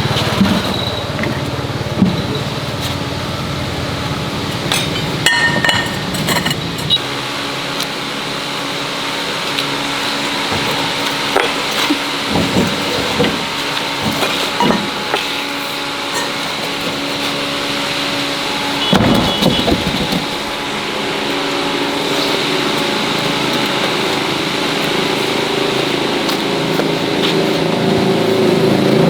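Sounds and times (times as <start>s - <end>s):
steady hum: 0.0s - 29.0s
metal tools clinking: 4.7s - 7.0s.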